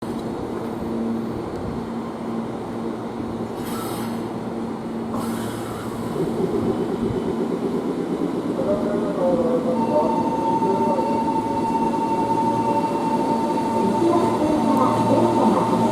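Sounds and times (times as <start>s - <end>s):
train traction motors whining: 3.3s - 15.9s
air hisses: 3.6s - 4.2s.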